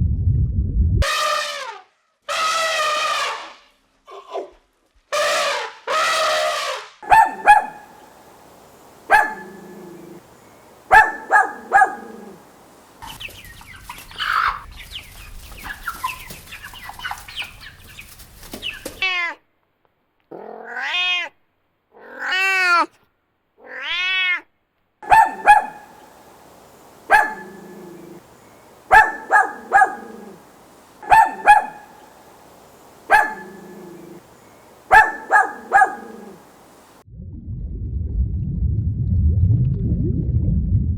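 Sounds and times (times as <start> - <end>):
dog barking: 7.0 - 8.1, 9.0 - 12.6, 25.0 - 26.2, 27.0 - 32.2, 33.0 - 36.6
cat meowing: 20.6 - 21.4, 22.0 - 22.9, 23.6 - 24.5.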